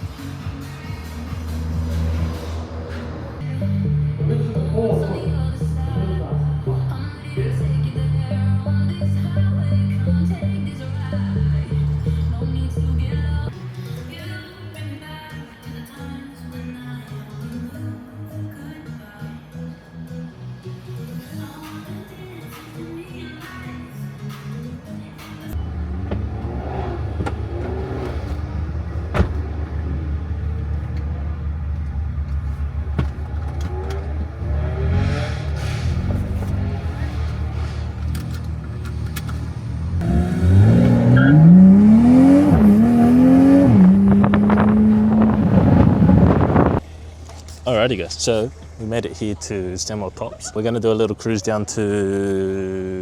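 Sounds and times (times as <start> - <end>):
car engine rumbling: 0.0 - 13.6, 25.5 - 50.8
electronic music with heavy bass: 0.0 - 13.6.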